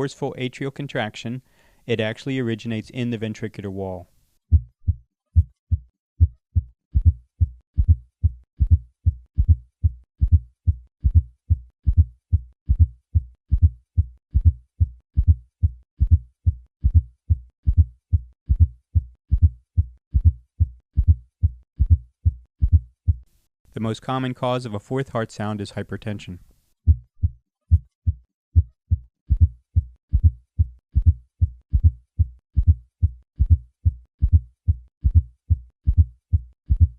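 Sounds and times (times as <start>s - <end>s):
heartbeat thuds: 4.5s - 23.2s, 26.9s - 36.9s.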